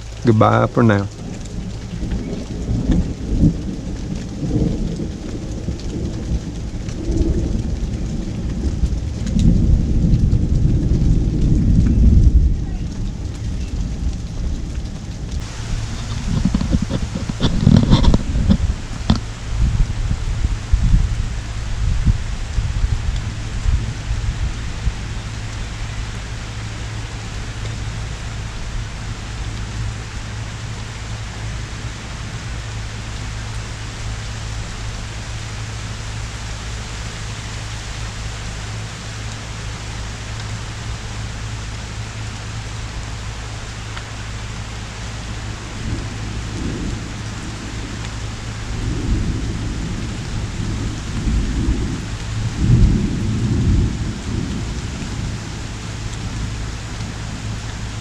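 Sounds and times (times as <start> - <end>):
thunder rumbling: 0.0 - 42.4, 44.4 - 58.0
heavy rain pouring: 0.0 - 58.0.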